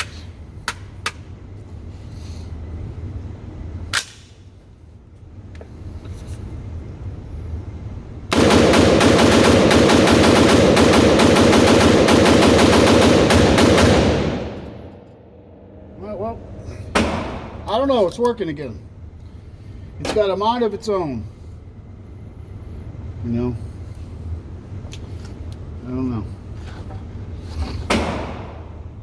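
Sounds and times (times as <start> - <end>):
rifle gunshots: 8.3 - 15.1, 16.9 - 17.6.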